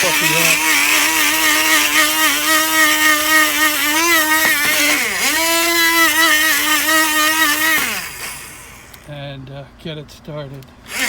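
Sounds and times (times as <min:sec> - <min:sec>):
sand blasting: 0:00.0 - 0:09.1
small electric motor whining: 0:00.0 - 0:09.1.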